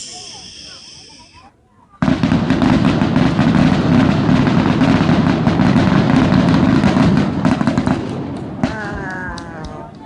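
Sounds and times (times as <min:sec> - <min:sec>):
fireworks booming and crackling: 0:02.0 - 0:10.0.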